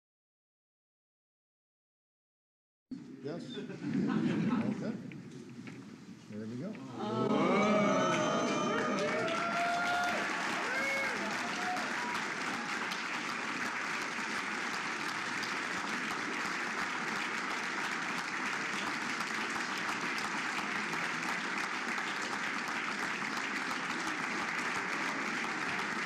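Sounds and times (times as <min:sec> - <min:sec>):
audience applauding: 0:06.9 - 0:26.0.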